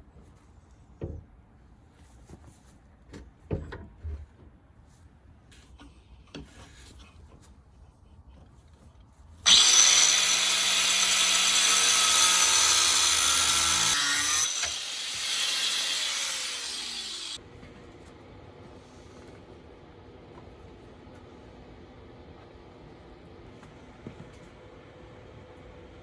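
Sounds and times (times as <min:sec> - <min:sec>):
electric power tool whining: 0:09.5 - 0:17.4.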